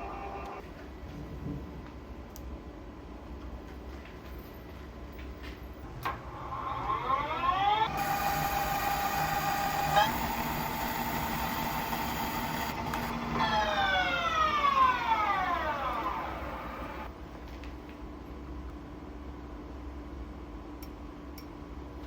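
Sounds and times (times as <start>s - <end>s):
lathe spindle whining: 0.0s - 0.6s, 6.3s - 17.1s.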